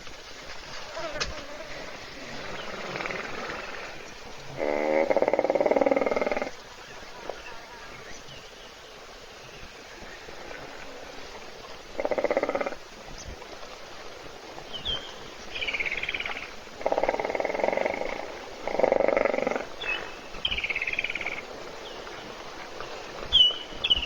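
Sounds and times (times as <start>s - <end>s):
hippopotamus snoring: 1.0s - 6.5s, 12.0s - 12.9s, 16.8s - 20.1s.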